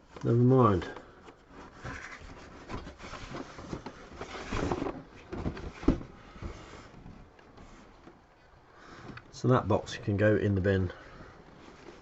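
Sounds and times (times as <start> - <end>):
cardboard box rustling: 1.3 - 8.2.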